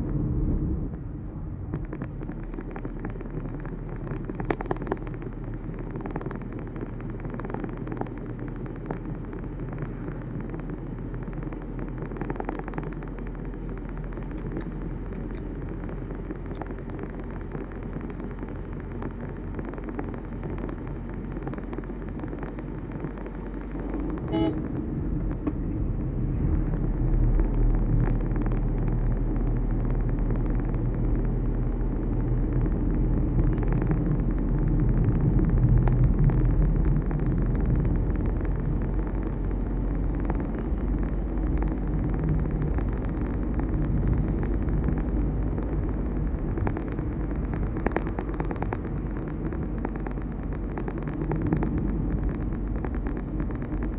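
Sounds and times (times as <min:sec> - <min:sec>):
vehicle engine and road noise: 0:00.0 - 0:53.9
short horn toot: 0:24.3 - 0:24.6.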